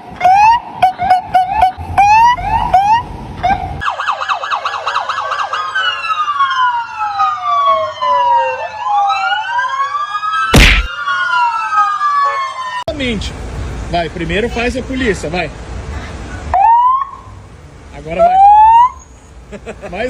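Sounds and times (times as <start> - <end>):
electronic police sirens: 0.2 - 12.9, 16.5 - 17.3, 18.2 - 19.1
sharp bang: 10.5 - 10.9.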